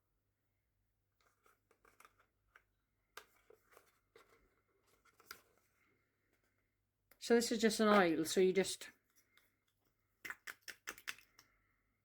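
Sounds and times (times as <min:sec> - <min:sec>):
makeup packaging clicks and rustles: 0:01.2 - 0:05.7, 0:07.6 - 0:11.6.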